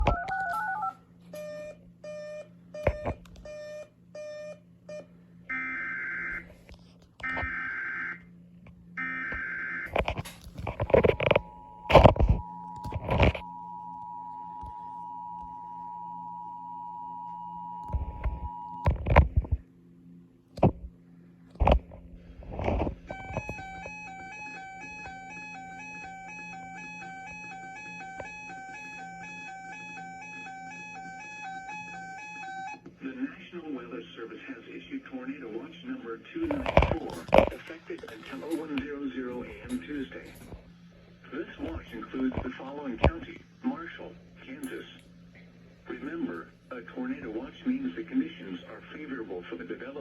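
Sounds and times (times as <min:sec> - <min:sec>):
low steady hum: 0:00.0 - 0:50.0
short beeps: 0:11.5 - 0:18.9
screeching data bursts: 0:23.1 - 0:32.8
two-note electronic warble: 0:23.1 - 0:32.8.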